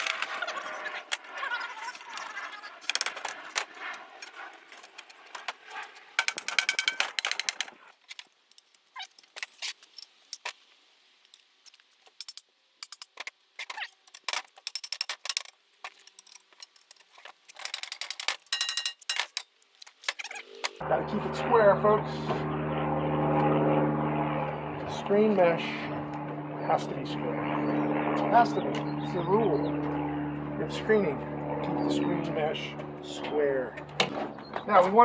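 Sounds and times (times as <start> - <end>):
metal frame pieces clinking: 17.6 - 19.5.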